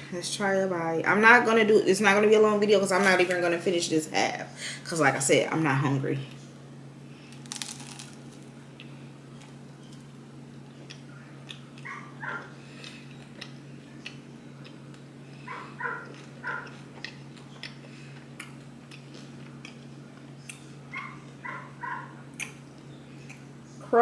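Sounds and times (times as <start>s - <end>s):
steady low hum: 0.0s - 24.0s
dog yapping: 11.8s - 12.5s, 15.5s - 16.8s, 20.9s - 22.1s.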